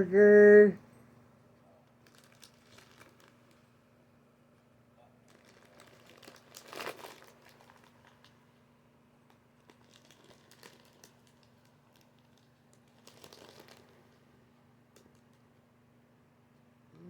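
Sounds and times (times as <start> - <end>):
small clicks and rustles: 1.5 - 3.8, 4.5 - 15.8
plastic packaging crinkling: 1.9 - 3.7, 5.2 - 8.4, 9.3 - 14.4.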